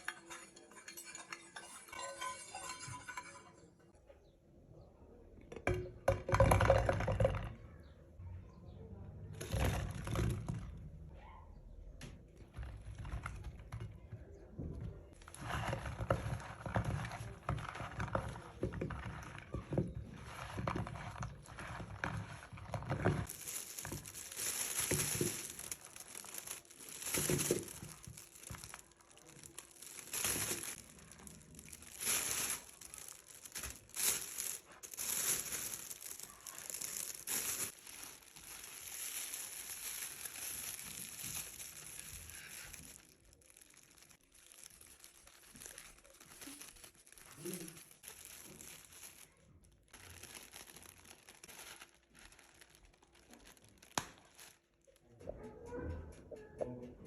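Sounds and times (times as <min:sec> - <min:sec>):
plastic bag crinkling: 0:15.1 - 0:55.0.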